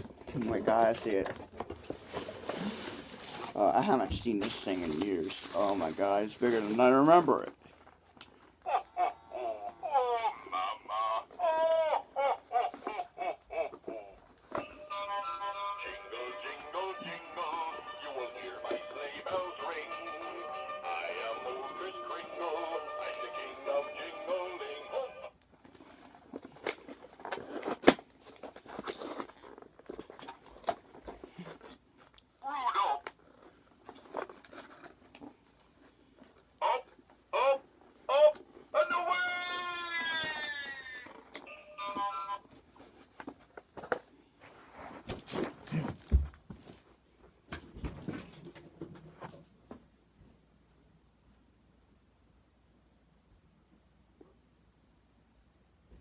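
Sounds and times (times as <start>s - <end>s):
cardboard box handling: 0.0s - 3.6s
cardboard box rustling and scraping: 0.0s - 7.2s, 26.1s - 31.9s, 33.5s - 35.5s, 42.6s - 46.7s.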